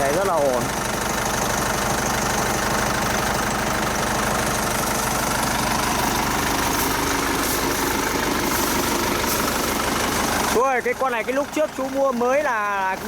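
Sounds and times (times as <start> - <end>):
tractor diesel engine running: 0.0 - 13.0.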